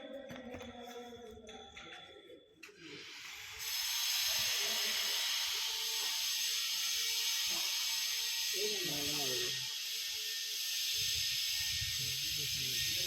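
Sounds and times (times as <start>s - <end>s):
steady hiss: 2.8s - 13.0s.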